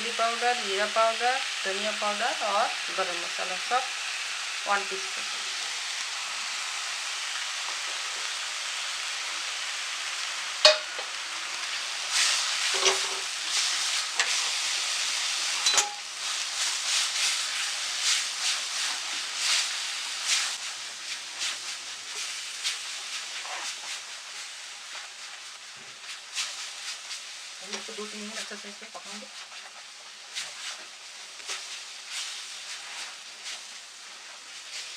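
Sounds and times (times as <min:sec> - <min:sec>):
paste sizzling in hot oil: 0:00.0 - 0:34.9
utensil clinking on pan: 0:10.6 - 0:11.1, 0:15.6 - 0:16.1
utensil stirring and scraping pan: 0:10.6 - 0:34.9.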